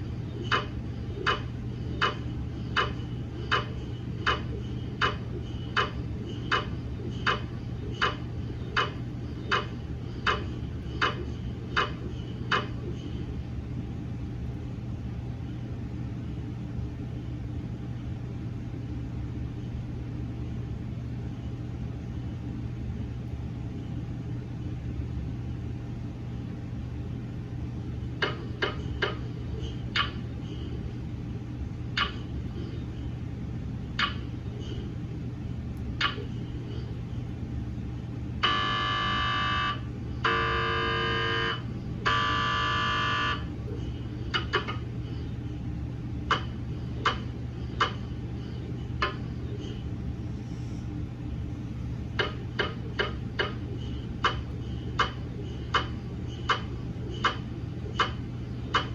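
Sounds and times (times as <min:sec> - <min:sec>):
steady low hum: 0:00.0 - 0:58.9
mri scanner knocking: 0:00.3 - 0:13.1, 0:52.1 - 0:58.9.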